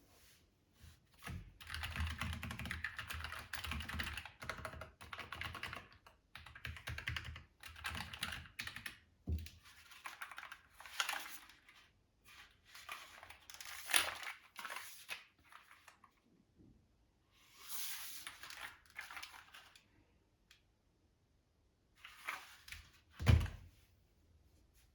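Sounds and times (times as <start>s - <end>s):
rapid keyboard key clicks: 1.6s - 8.9s.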